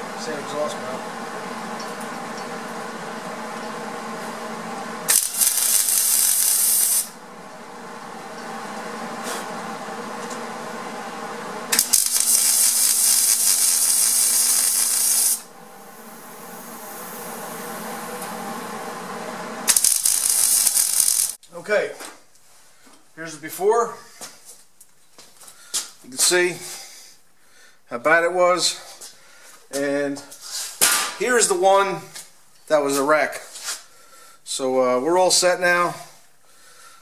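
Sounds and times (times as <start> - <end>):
electrical hum: 0.0 - 24.0
welding arc crackling hiss: 5.0 - 7.2, 11.7 - 21.4.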